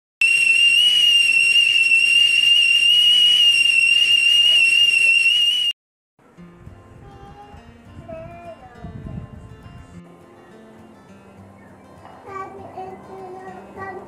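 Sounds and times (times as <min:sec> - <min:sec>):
kettle whistling: 0:00.2 - 0:05.8
faint music: 0:06.2 - 0:14.0.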